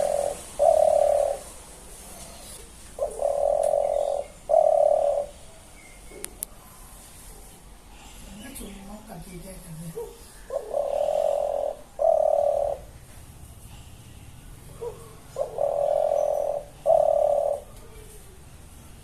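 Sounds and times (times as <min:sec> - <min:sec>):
pigeon cooing: 0:00.0 - 0:06.5, 0:09.9 - 0:13.0, 0:14.7 - 0:19.0.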